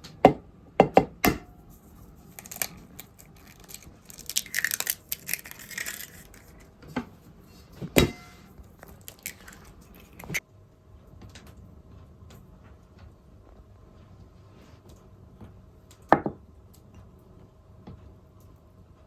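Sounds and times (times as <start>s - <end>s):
rustling: 1.6s - 10.4s.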